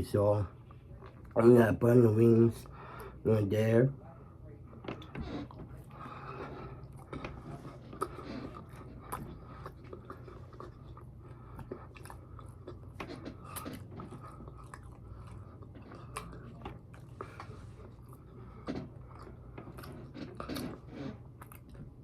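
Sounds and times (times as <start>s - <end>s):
low steady hum: 0.0s - 22.0s
chewing and crunching: 0.2s - 3.1s, 4.7s - 22.0s.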